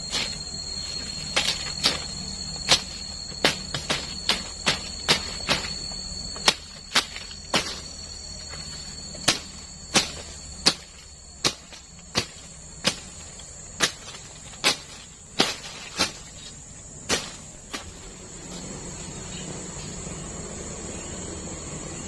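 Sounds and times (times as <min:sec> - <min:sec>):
high insect buzz: 0:00.0 - 0:22.0
sharp knocks: 0:01.3 - 0:08.6, 0:09.2 - 0:16.4.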